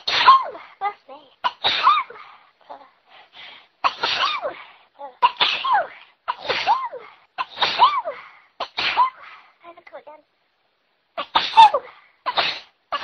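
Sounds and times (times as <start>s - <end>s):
person sneezing: 0.0s - 0.8s, 3.9s - 9.4s, 11.2s - 13.0s
sharp breaths in: 2.1s - 3.8s, 9.2s - 9.6s.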